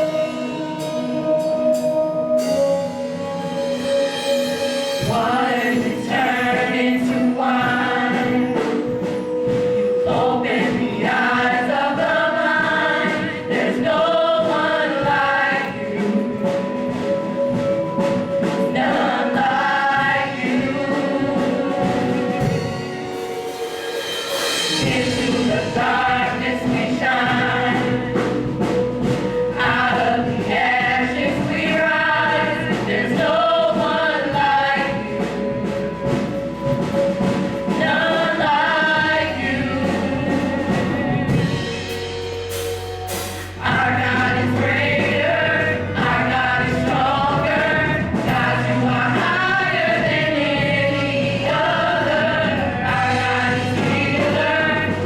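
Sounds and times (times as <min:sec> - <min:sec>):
band accompaniment: 0:00.0 - 0:55.0
choir singing: 0:00.0 - 0:55.0.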